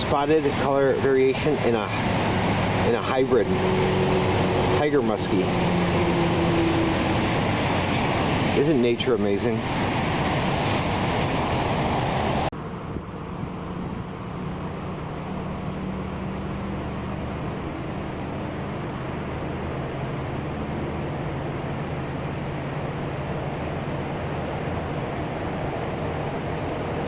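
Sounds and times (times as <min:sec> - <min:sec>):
loud rushing noise: 0:00.0 - 0:12.5
distant engine hum: 0:00.0 - 0:27.0.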